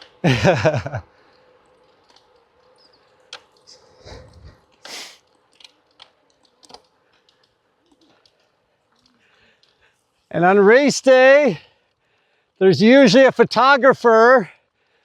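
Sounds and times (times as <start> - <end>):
faint clicks: 0.8 - 10.3
short hiss: 3.7 - 5.3.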